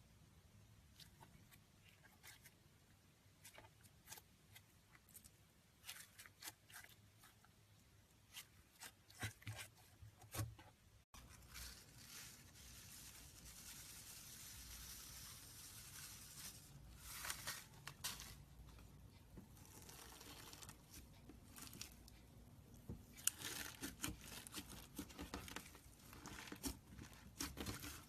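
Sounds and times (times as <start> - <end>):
slime clicking and crackling: 23.2 - 28.0.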